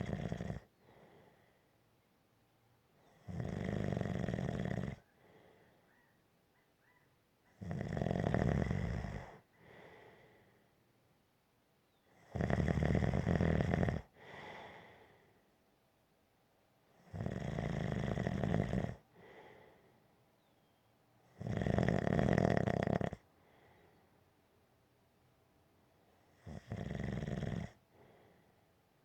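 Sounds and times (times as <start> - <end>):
rattling snores: 0.0 - 0.7, 3.1 - 5.1, 7.6 - 9.4, 12.2 - 14.1, 17.0 - 19.0, 21.3 - 23.2, 26.3 - 27.8
soft breath: 0.8 - 1.8, 5.0 - 6.2, 9.4 - 10.8, 14.2 - 15.5, 19.1 - 20.5, 23.3 - 24.2, 27.9 - 28.8.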